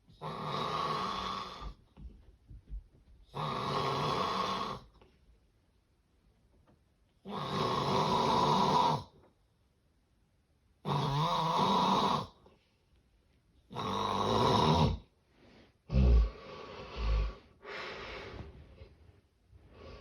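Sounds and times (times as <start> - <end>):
loud rasping snores: 0.2 - 1.8, 3.3 - 4.9, 7.3 - 9.1, 10.8 - 12.4, 13.7 - 15.0, 15.9 - 17.4.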